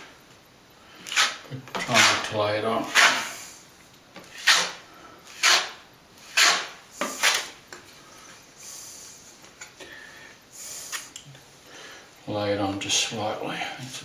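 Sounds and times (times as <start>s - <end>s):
plastering blade scraping plaster: 1.0s - 3.5s, 4.2s - 7.6s.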